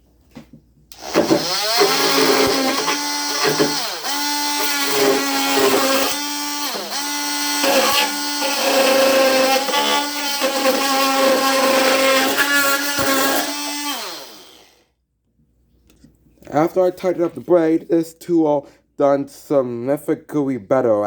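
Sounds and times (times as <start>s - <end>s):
oscillating multi-tool cutting wood: 0.9s - 14.8s.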